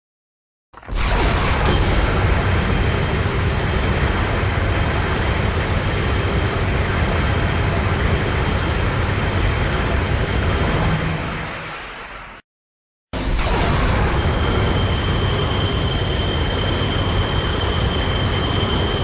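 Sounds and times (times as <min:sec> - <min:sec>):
deep rumbling noise: 0:01.0 - 0:12.4.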